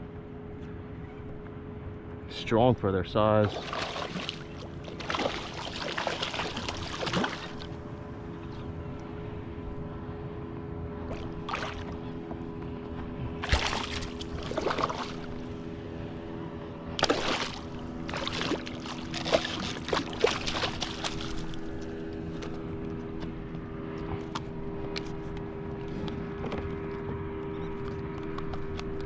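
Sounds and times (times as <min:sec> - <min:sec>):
steady low hum: 0:00.0 - 0:29.0
water splashing around kayak: 0:03.4 - 0:09.6, 0:10.6 - 0:22.6.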